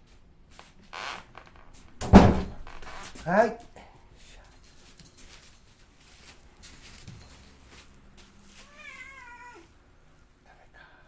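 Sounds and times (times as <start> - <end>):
faint taps and rustles: 4.7 - 8.7
cat meowing: 8.7 - 9.7.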